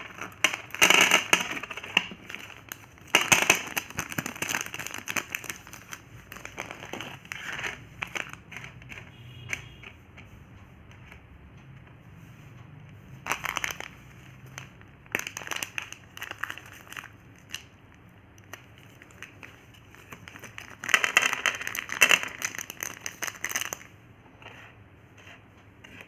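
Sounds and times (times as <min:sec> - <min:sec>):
plastic wrapper crinkling: 0:00.0 - 0:09.1, 0:13.3 - 0:23.9.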